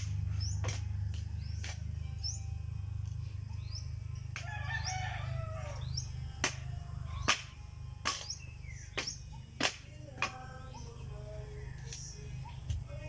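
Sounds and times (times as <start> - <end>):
background music: 0.0 - 13.0
rooster crowing: 4.4 - 6.1.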